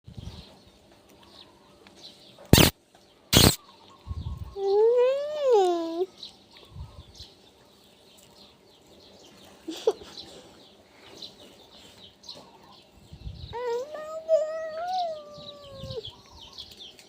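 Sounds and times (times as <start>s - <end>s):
small birds chirping: 0.1s - 17.0s
sharp squeak: 3.3s - 3.6s.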